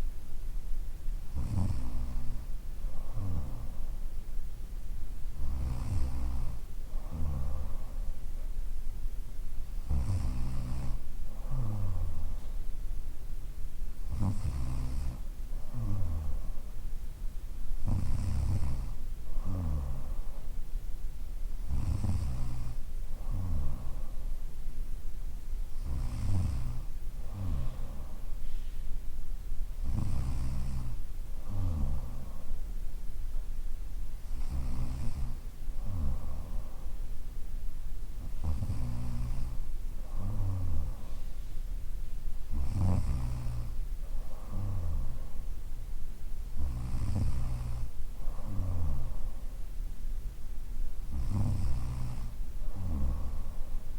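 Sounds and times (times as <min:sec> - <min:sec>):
woman snoring: 0:01.4 - 0:03.9, 0:05.4 - 0:08.0, 0:09.8 - 0:12.4, 0:14.1 - 0:16.6, 0:17.8 - 0:20.4, 0:21.7 - 0:24.1, 0:25.8 - 0:28.2, 0:29.8 - 0:32.4, 0:34.3 - 0:36.9, 0:38.2 - 0:41.2, 0:42.5 - 0:45.3, 0:46.6 - 0:49.4, 0:51.1 - 0:53.7.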